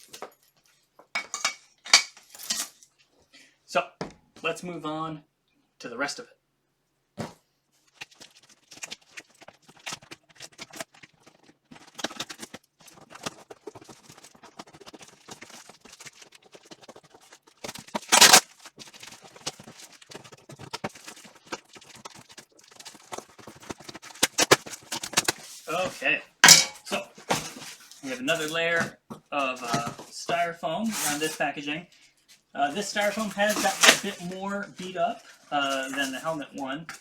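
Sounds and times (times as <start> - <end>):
box and packing being handled: 7.2 - 31.4, 32.2 - 37.0.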